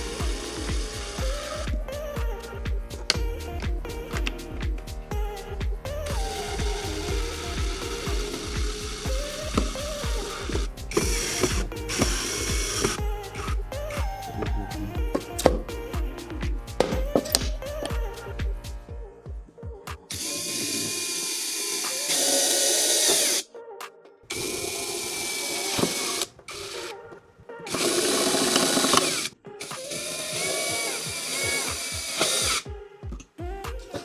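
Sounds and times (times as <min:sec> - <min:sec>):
electric power tool running: 0:00.0 - 0:01.8, 0:06.1 - 0:13.6, 0:24.3 - 0:26.9, 0:27.7 - 0:32.6
background music: 0:00.0 - 0:34.0.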